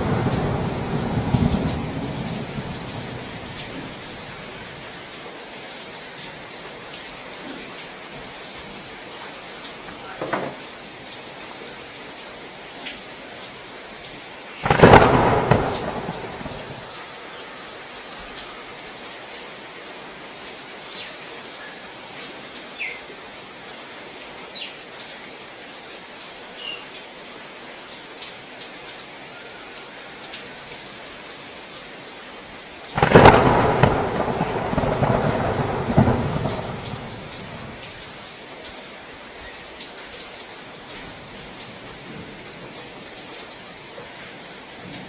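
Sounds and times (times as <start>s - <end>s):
thunder claps: 0.0s - 4.8s, 14.6s - 17.1s, 33.0s - 38.1s
heavy rain falling: 0.0s - 45.0s.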